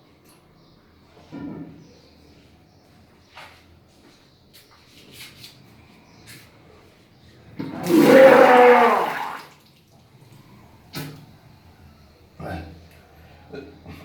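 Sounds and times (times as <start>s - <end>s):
person retching and vomiting: 7.7s - 9.5s
gush of liquid: 7.8s - 10.0s.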